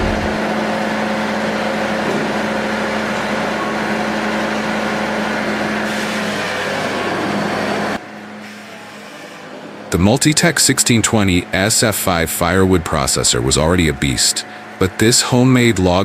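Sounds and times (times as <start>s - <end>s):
engine droning steadily: 0.0s - 5.9s, 9.8s - 16.0s.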